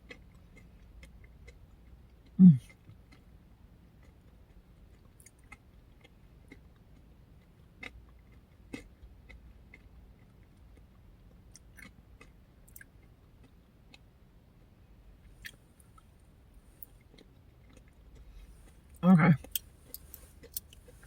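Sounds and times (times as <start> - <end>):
chewing food: 0.0 - 14.1, 15.3 - 21.0.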